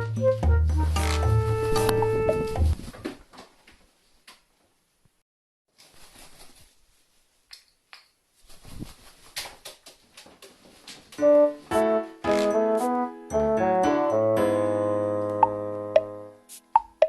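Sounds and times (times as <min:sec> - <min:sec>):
piano music: 0:00.0 - 0:02.8, 0:11.2 - 0:16.7.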